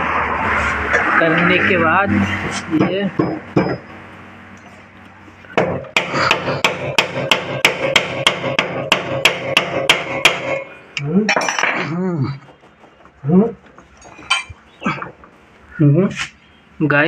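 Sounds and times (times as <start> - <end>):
hammer tapping on metal: 2.8 - 3.8.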